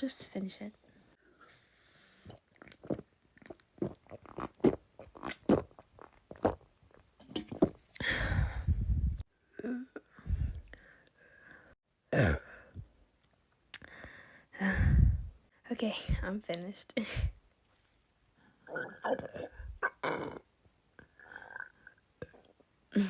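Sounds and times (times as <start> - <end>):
person gulping soda: 2.2 - 9.2, 18.7 - 21.6
person burping: 9.6 - 10.1, 12.1 - 12.5, 18.7 - 20.5.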